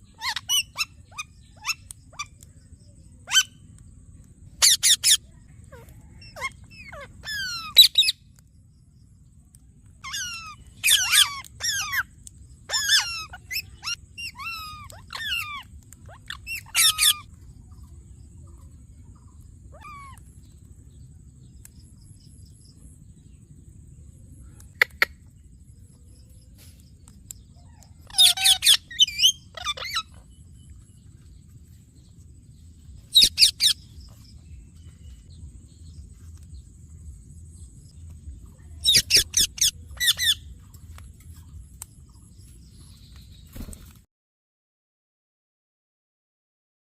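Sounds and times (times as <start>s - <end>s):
faint low hum: 0.0s - 44.0s
parrot squawking: 0.2s - 2.3s, 3.3s - 3.5s, 4.6s - 8.1s, 10.0s - 12.1s, 12.7s - 17.3s, 19.7s - 20.2s, 28.0s - 30.2s, 33.1s - 33.8s, 38.8s - 40.5s.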